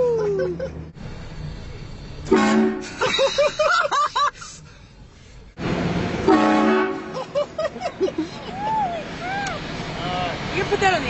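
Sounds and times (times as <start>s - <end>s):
train horn blast: 2.2s - 3.0s, 6.2s - 7.2s.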